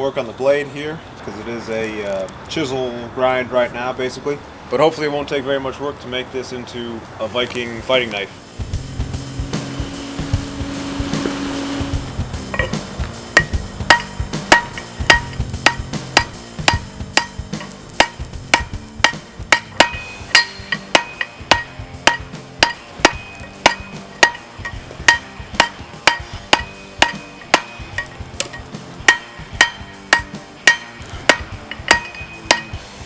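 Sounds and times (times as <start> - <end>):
background music low notes: 7.5 - 33.0
hammer ringing on anvil: 12.5 - 32.9.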